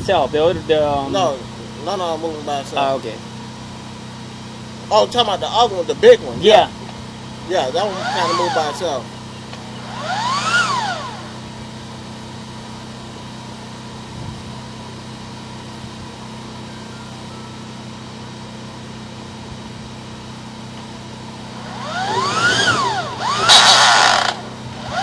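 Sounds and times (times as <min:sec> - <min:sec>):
drain-cleaning machine motor: 0:00.0 - 0:13.7, 0:20.0 - 0:25.0.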